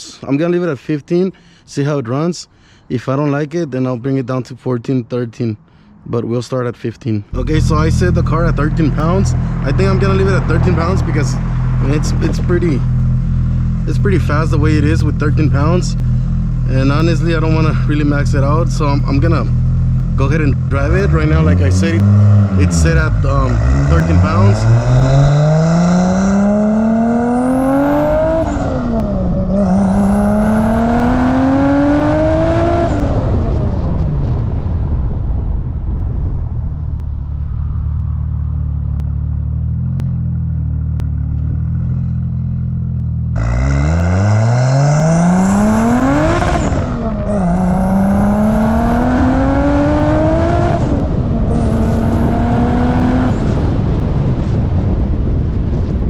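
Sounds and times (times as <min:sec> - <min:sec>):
turbocharged car engine accelerating: 0:07.3 - 0:56.0.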